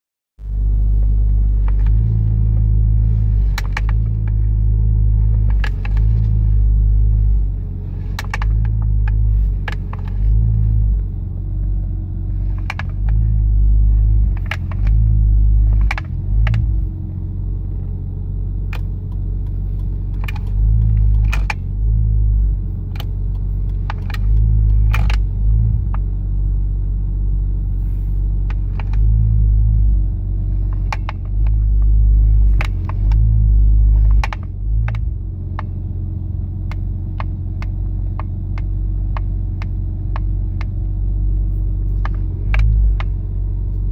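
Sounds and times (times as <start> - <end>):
car engine drone: 0.4 - 43.9
steering wheel clicking: 0.8 - 43.9.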